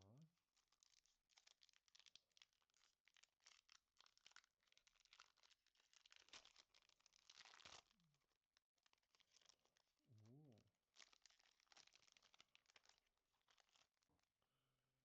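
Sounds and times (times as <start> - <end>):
foil wrapper crinkling: 0.6 - 8.1, 8.8 - 9.9, 11.0 - 14.1.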